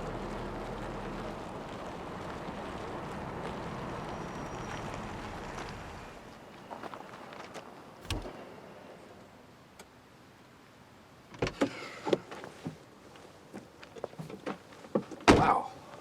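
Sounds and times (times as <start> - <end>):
car door slamming: 8.0 - 8.3
car door clicks and knocks: 8.1 - 8.3.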